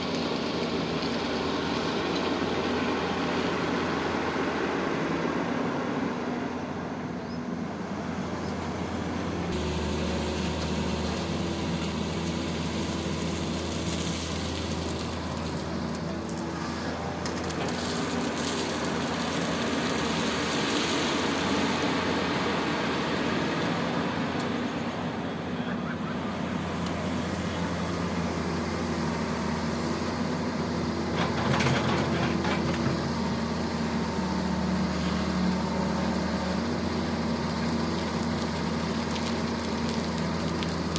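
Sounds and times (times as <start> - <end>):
heavy diesel engines running: 0.0 - 40.9.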